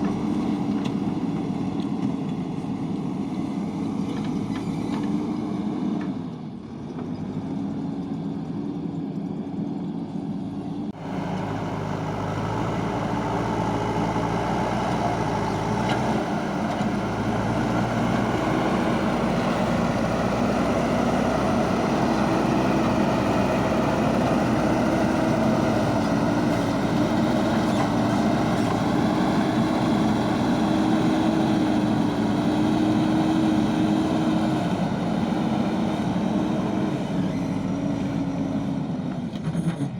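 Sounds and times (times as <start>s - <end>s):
diesel engine running: 10.3s - 39.9s.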